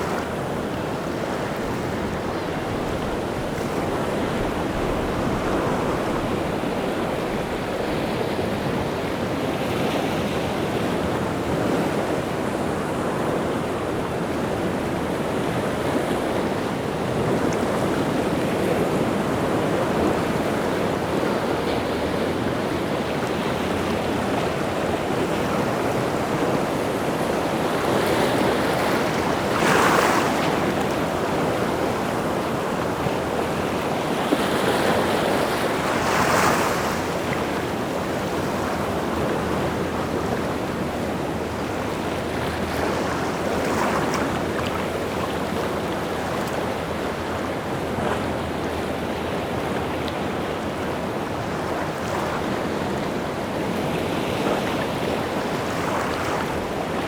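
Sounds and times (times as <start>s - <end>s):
wind: 0.0s - 57.0s
waves breaking: 15.4s - 57.0s.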